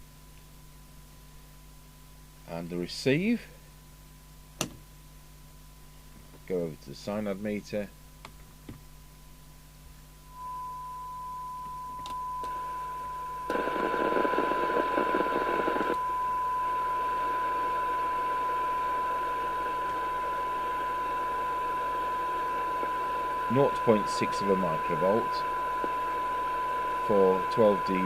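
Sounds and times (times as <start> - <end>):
steady test tone: 10.2 - 28.0
radio receiver hiss: 13.5 - 28.0.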